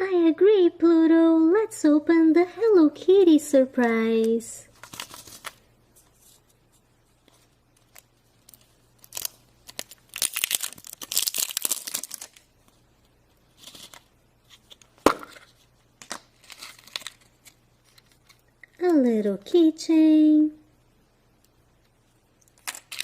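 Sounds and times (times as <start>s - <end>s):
packaging tearing and crinkling: 4.8s - 5.6s, 7.8s - 12.5s, 13.5s - 14.9s, 16.1s - 18.5s, 22.5s - 23.0s.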